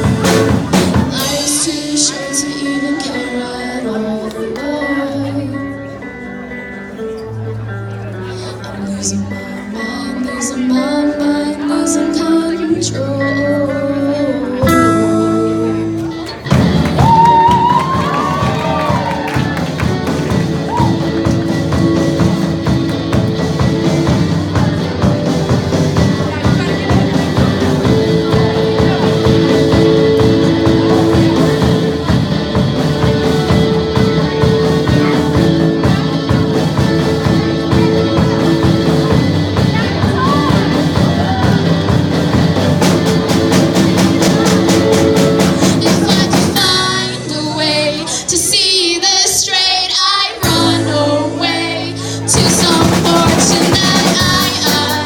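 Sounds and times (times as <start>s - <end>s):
drum kit: 0.0s - 3.2s, 14.6s - 49.2s, 50.4s - 55.0s
person singing: 0.0s - 6.7s, 8.2s - 55.0s
rock music: 0.0s - 55.0s.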